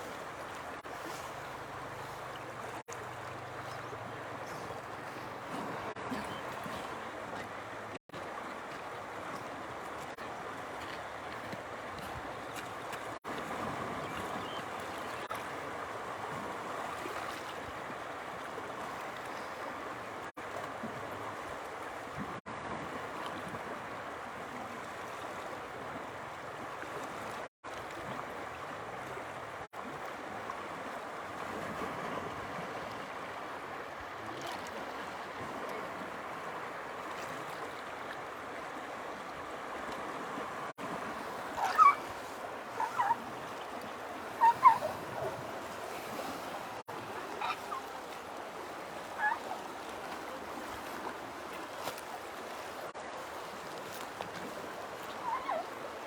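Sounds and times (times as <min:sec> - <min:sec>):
short sharp animal calls: 0:41.6 - 0:42.1, 0:44.4 - 0:45.3.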